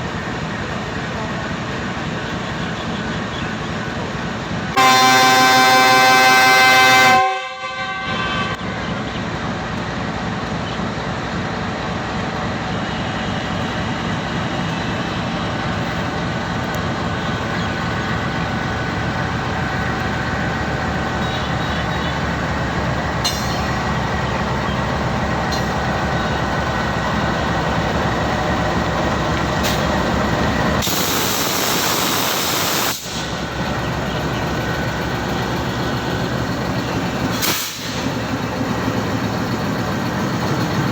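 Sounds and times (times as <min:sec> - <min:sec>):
train rushing hiss: 0:08.6 - 0:40.9
train wheels clattering on rails: 0:09.0 - 0:40.9.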